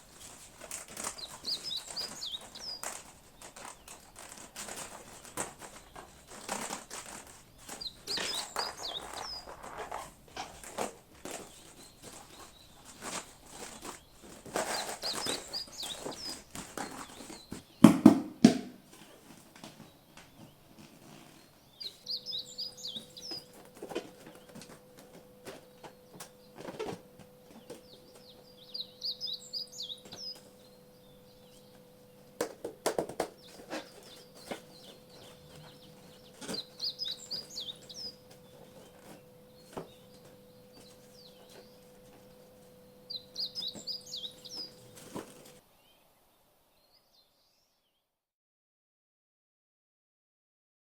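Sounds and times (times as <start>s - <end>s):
plastic parts clicking and tapping: 0.1s - 21.0s
bird chirps: 0.2s - 10.0s, 10.6s - 17.9s, 19.8s - 26.7s, 27.4s - 32.3s, 33.2s - 46.1s.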